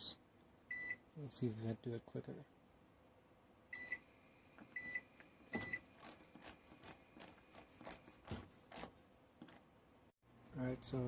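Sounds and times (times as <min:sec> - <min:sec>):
microwave beeping: 0:00.7 - 0:01.0, 0:03.7 - 0:04.1, 0:04.7 - 0:05.9.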